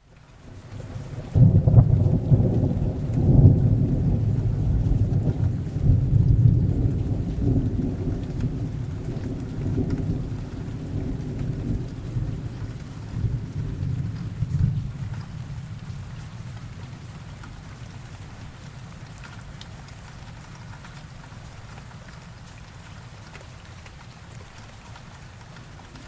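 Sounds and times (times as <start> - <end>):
rain hiss: 0.0 - 26.0
deep thunder rumble: 1.2 - 17.0.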